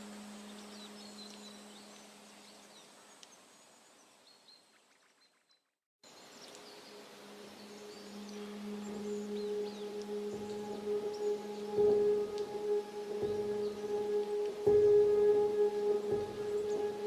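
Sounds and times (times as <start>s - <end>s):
low musical drone: 0.0s - 2.6s, 6.7s - 17.0s
faint forest ambience: 0.0s - 17.0s
small birds chirping: 0.0s - 17.0s
thin steady high tone: 6.8s - 17.0s.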